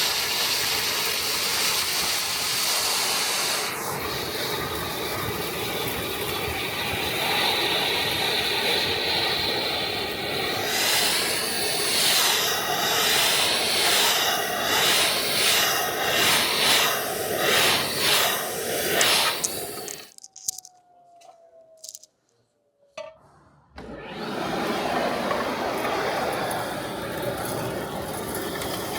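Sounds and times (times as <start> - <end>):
industrial vacuum suction whoosh: 9.9 - 20.1.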